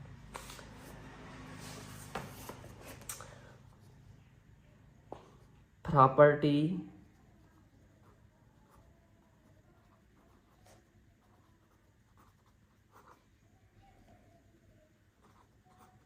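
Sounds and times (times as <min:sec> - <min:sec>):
pen scratching on notepad: 0:00.3 - 0:03.1, 0:07.3 - 0:13.4, 0:15.1 - 0:16.0.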